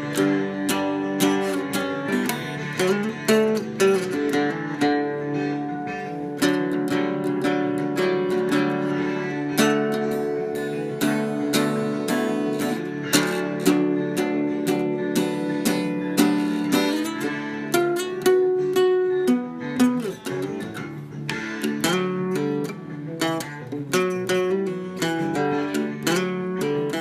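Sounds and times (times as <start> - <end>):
strummed acoustic guitar: 0.0 - 27.0.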